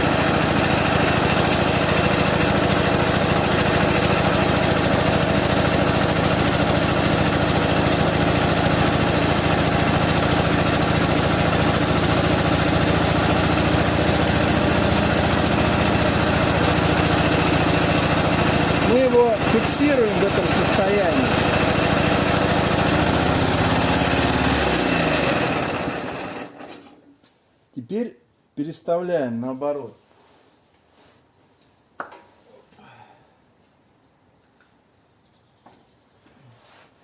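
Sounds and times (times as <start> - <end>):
motorcycle engine running steadily: 0.0 - 26.5.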